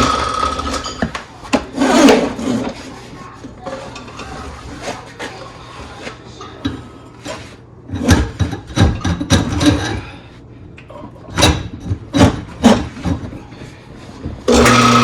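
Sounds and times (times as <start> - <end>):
tools clattering at a sink: 7.9 - 10.1.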